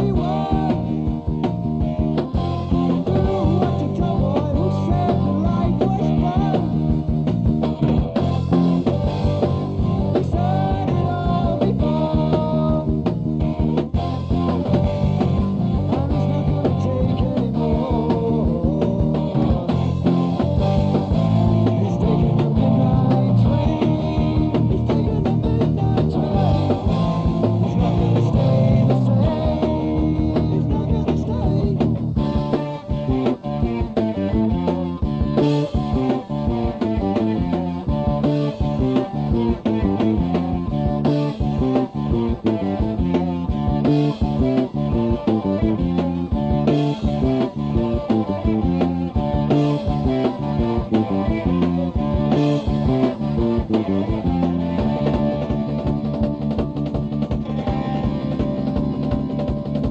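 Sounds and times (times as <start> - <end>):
heavy metal band playing: 0.0 - 59.9.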